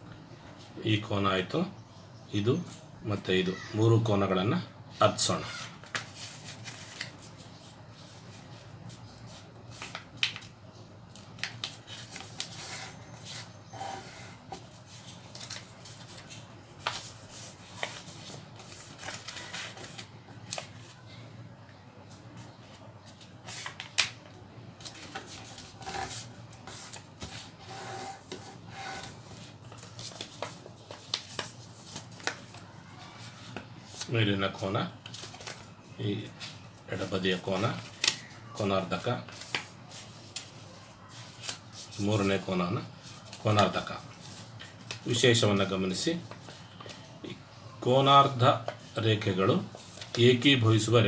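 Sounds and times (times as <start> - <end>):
paper crinkling and creasing: 5.3 - 7.7, 8.9 - 10.5, 11.2 - 21.0, 24.8 - 34.2, 35.0 - 47.1, 48.6 - 50.5.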